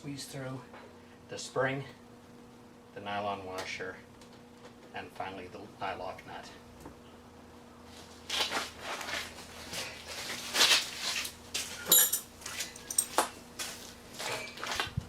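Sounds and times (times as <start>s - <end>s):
metal hardware clicking and clinking: 11.8s - 13.3s.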